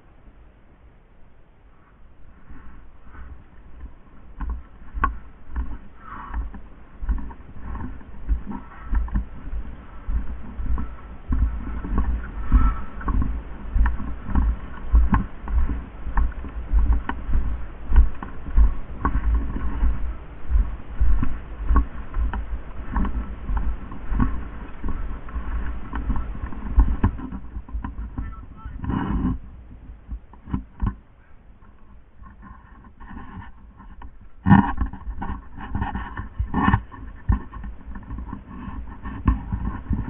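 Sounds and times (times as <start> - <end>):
clothing and gear rustling: 1.8 - 28.2
heavy footsteps: 2.2 - 30.9.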